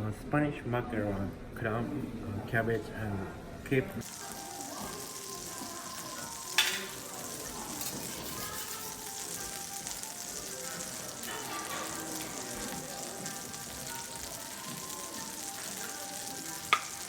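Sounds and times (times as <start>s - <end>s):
food sizzling on a griddle: 4.0s - 17.0s.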